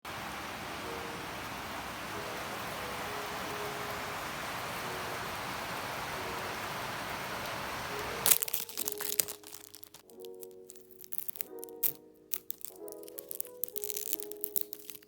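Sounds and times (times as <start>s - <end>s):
steady static hiss: 0.0s - 9.4s
soft background music: 0.4s - 15.0s
plastic packaging crinkling: 8.2s - 15.0s.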